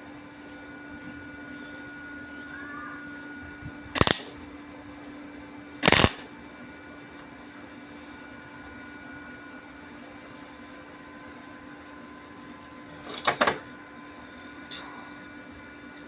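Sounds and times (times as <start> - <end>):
steady electrical hum: 0.0 - 16.0
arc welding bursts: 4.0 - 4.4, 5.8 - 6.3.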